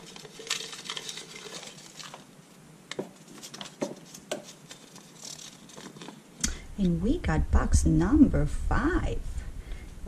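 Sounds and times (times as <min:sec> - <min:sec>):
paper slips rattling in container: 0:00.0 - 0:06.2
clicks and rustles: 0:00.0 - 0:06.4.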